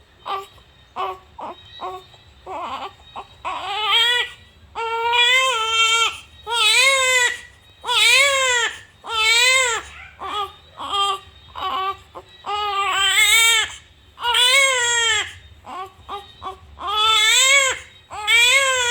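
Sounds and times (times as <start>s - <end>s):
infant crying: 0.3s - 18.9s.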